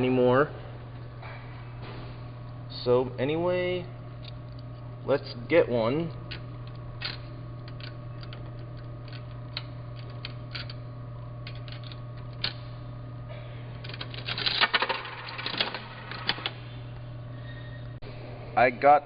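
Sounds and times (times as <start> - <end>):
steady low hum: 0.0 - 19.0
coins clicking into machine: 11.4 - 12.6, 13.8 - 16.5
vending machine clattering: 13.8 - 16.6.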